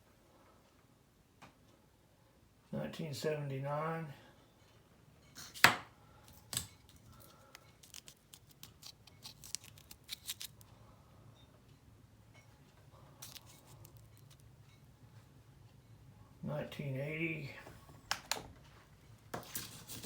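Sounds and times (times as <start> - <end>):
coin holders handled: 6.3 - 10.6, 13.2 - 14.5.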